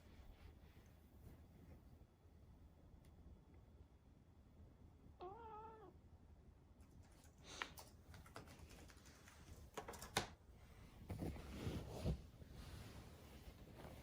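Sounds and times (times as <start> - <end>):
cat meowing: 5.2 - 6.0.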